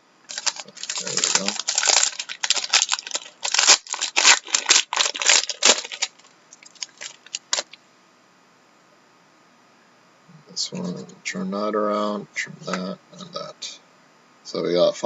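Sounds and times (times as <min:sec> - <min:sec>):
packaging torn and crinkled: 0:00.3 - 0:07.8.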